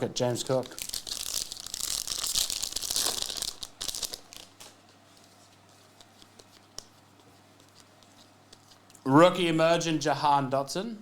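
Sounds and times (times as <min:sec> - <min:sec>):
plastic wrapping crinkling: 0:00.2 - 0:06.9.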